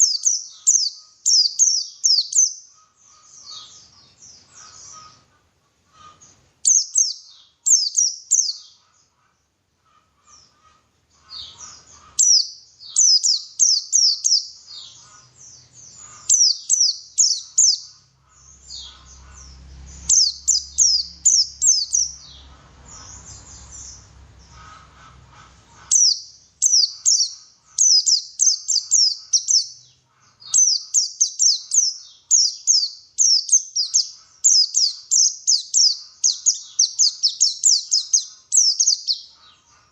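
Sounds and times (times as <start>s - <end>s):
bird singing high rapid notes: 0.0s - 5.2s, 6.2s - 8.8s, 11.2s - 24.8s, 25.8s - 39.4s
faint low rumble: 18.1s - 26.0s.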